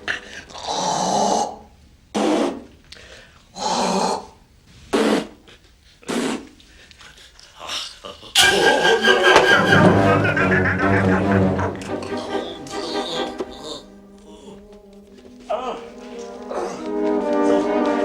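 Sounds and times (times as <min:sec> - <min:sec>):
music: 0:00.0 - 0:01.7, 0:08.4 - 0:18.0.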